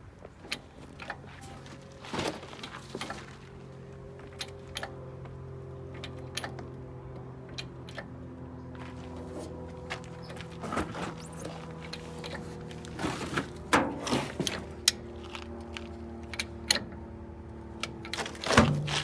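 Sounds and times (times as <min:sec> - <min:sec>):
metal clanks and knocks: 0:10.4 - 0:14.9, 0:18.1 - 0:19.0.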